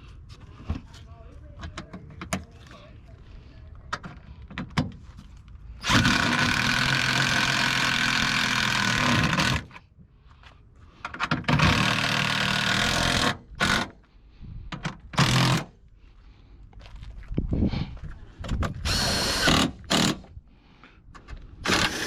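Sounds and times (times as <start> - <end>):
power drill motor running: 5.8 - 9.6, 11.5 - 13.9, 15.2 - 15.7, 18.8 - 20.3, 21.6 - 22.0.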